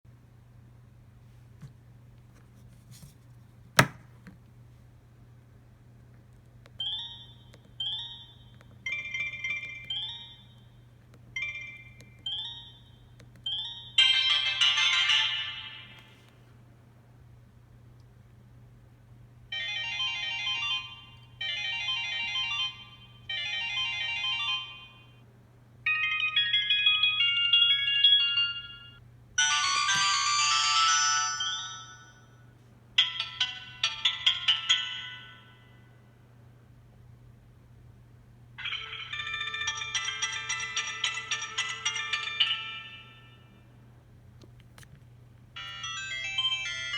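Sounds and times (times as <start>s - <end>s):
faint steady hum: 0.1s - 46.9s
phone ringtone melody: 6.8s - 16.2s, 19.5s - 25.2s, 25.9s - 32.3s, 33.0s - 35.7s, 38.6s - 43.6s, 45.6s - 46.9s.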